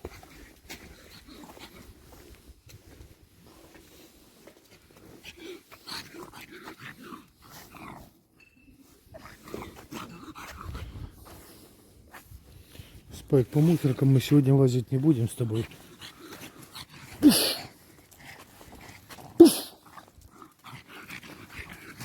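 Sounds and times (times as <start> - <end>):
dog snuffling and breathing: 9.2 - 13.1.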